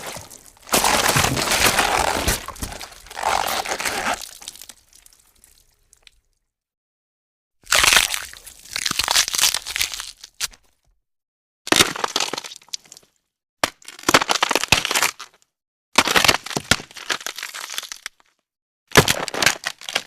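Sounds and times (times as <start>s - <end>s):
bones cracking and snapping: 0.0s - 6.2s, 7.7s - 10.6s.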